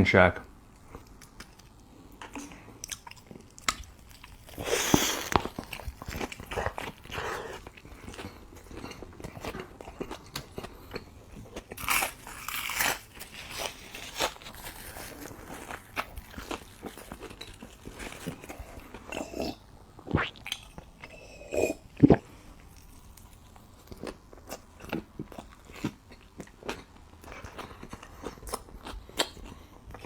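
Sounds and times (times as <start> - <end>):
wet chewing: 0.7 - 19.4, 22.0 - 30.0
crunchy bites: 11.6 - 18.5.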